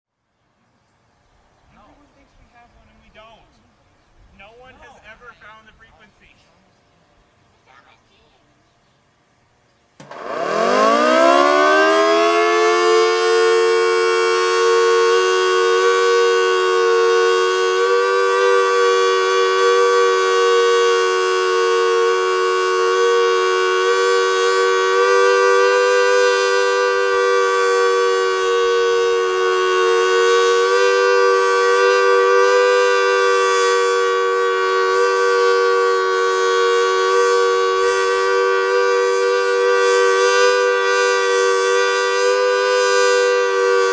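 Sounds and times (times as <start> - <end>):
two-tone warning siren: 10.0 - 43.9.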